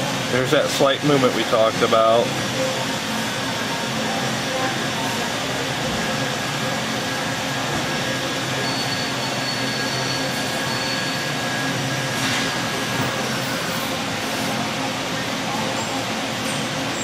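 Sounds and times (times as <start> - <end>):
welding machine running: 0.0 - 17.0
thin high whines: 8.4 - 14.6.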